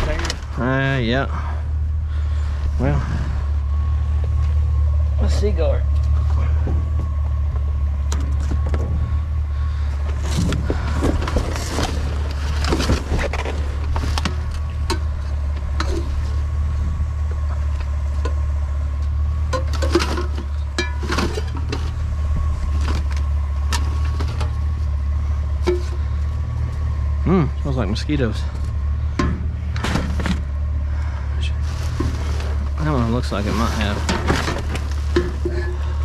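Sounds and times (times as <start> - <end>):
low mechanical hum: 0.0 - 36.0
items clattering in a dumpster: 9.7 - 16.5, 19.4 - 24.9, 29.0 - 30.8, 31.4 - 36.0.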